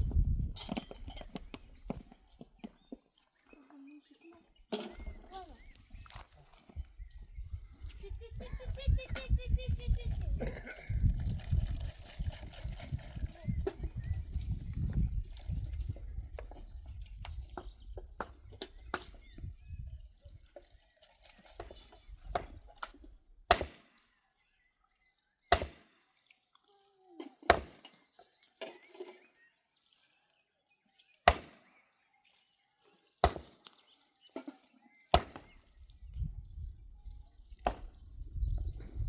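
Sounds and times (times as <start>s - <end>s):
small bird chirping: 12.7s - 23.2s.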